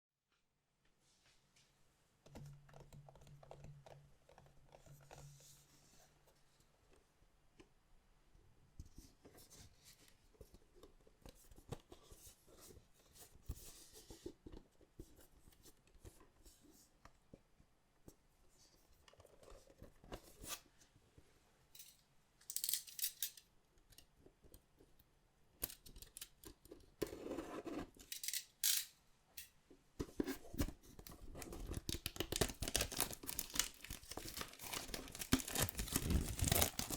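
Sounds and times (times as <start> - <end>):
plastic wrap and cardboard rustling: 30.4 - 36.9
packaging cutting and tearing: 31.5 - 36.9.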